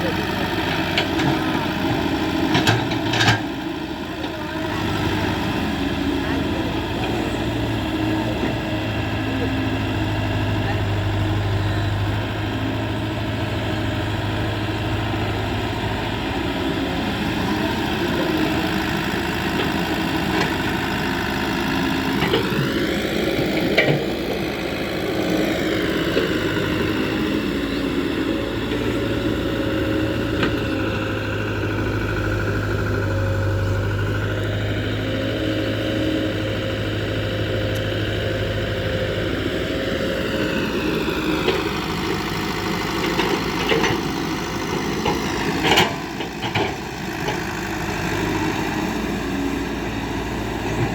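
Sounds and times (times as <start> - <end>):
diesel engine running: 0.0 - 50.9.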